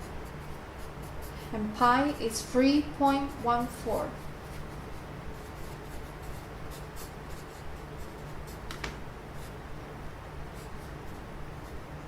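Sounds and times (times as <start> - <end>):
pen scratching on paper: 0.0 - 9.6
steady low hum: 0.0 - 12.0.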